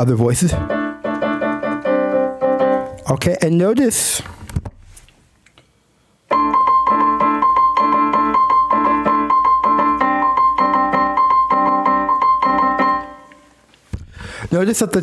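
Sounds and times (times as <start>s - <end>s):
piano playing chords: 0.6s - 3.2s, 6.3s - 13.6s.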